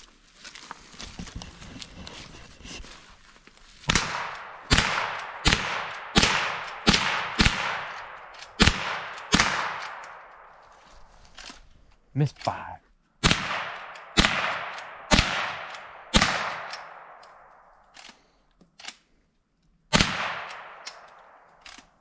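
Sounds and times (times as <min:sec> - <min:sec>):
rifle shots with echo: 0:03.9 - 0:10.6, 0:13.2 - 0:17.7, 0:19.9 - 0:21.5.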